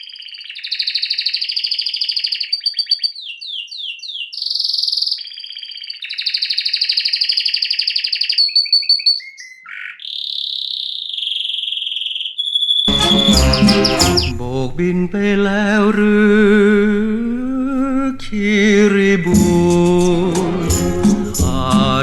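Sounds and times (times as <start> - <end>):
canary singing: 0.0 - 14.8.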